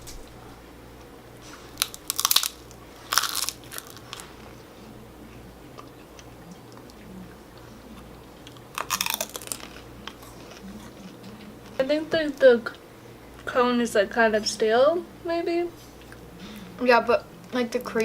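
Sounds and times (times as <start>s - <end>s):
crunching wafer cone: 1.4s - 4.6s, 8.0s - 11.2s.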